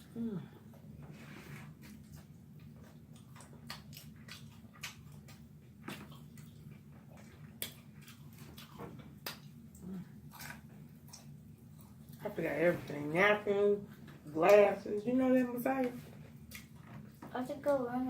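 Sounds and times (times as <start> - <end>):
low steady hum: 0.0 - 18.0
crunching food: 1.9 - 12.2.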